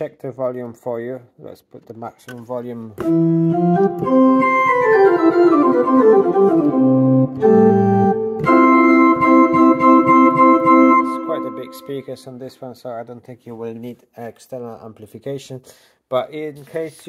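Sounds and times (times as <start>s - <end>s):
digital piano organ chords: 3.0s - 12.3s.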